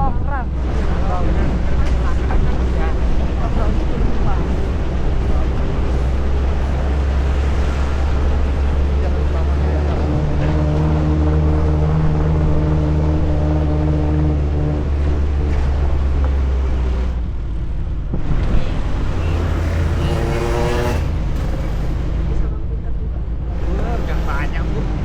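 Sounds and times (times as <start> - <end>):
car engine running: 0.0 - 25.0
high whining tone: 18.5 - 22.0.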